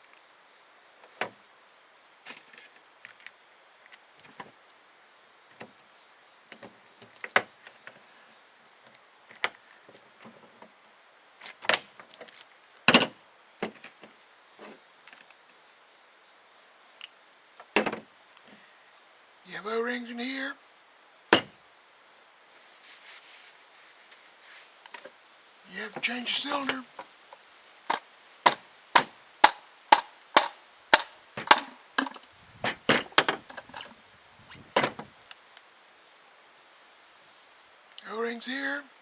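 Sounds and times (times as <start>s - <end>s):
clicks and knocks of metal parts: 27.9s - 33.9s.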